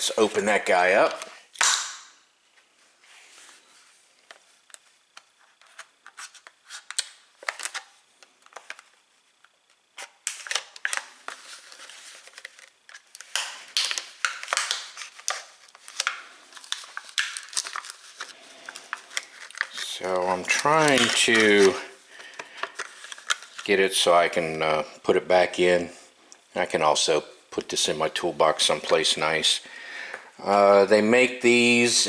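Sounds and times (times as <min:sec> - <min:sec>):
packaging clicks snaps and crinkles: 0:01.0 - 0:02.0, 0:04.6 - 0:09.0, 0:09.7 - 0:23.7.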